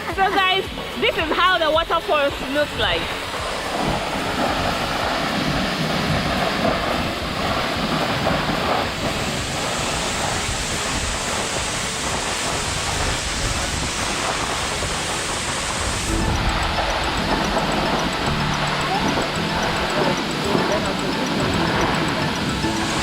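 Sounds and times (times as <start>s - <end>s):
music: 0.0s - 8.4s, 16.0s - 23.0s
waterfall rushing: 0.0s - 23.0s.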